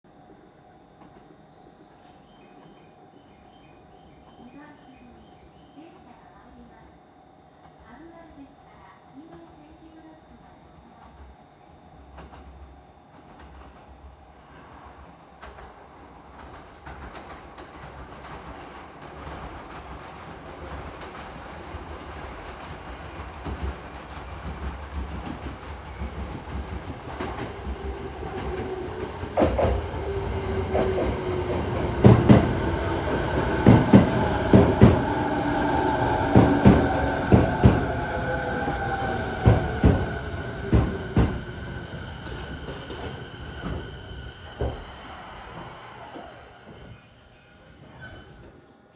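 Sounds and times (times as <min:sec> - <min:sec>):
electric train arriving: 0:12.2 - 0:48.9
falling train whine: 0:22.3 - 0:48.2.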